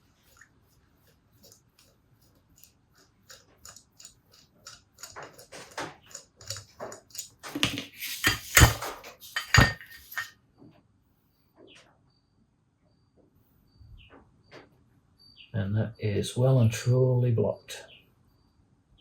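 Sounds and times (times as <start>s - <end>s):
metal parts and tools clinking: 1.4s - 10.3s.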